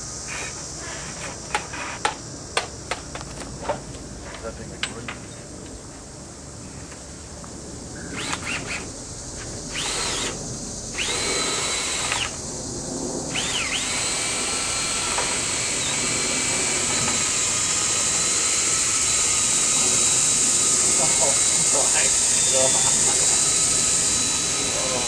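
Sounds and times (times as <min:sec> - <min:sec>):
power drill whining: 0:08.1 - 0:08.9, 0:09.7 - 0:12.4, 0:13.3 - 0:25.0.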